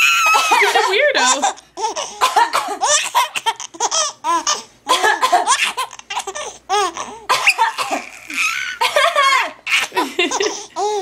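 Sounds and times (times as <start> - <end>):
baby giggling: 2.8 - 11.0.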